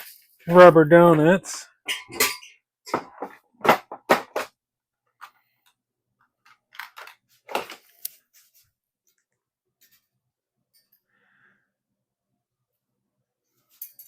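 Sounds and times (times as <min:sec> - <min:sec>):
small hard parts clattering: 0:06.4 - 0:08.0.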